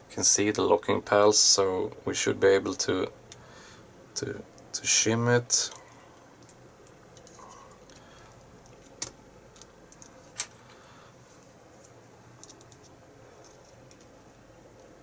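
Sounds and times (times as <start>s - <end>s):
metallic clicks and rattles: 11.8s - 14.2s.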